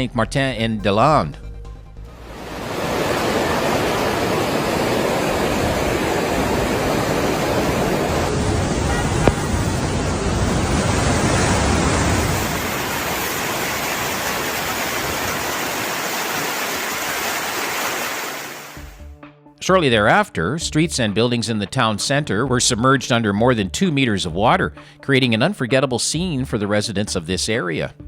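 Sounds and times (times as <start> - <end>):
floodwater rushing: 2.2 - 19.0.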